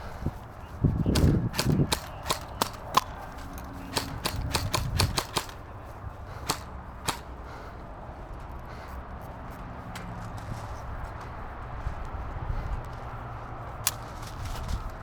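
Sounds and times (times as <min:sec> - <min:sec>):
airsoft guns firing: 0:01.0 - 0:07.7.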